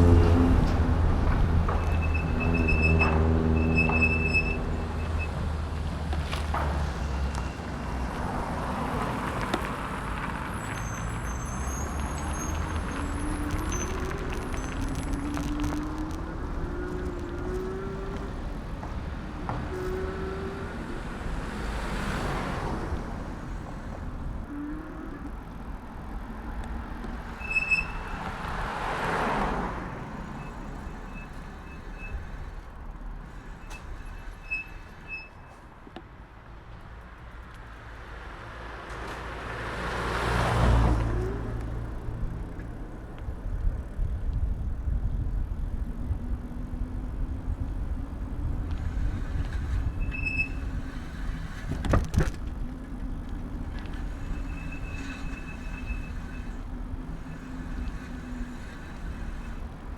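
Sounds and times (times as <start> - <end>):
road and wind rumble: 0.0 - 59.9
vehicles passing: 0.0 - 59.9.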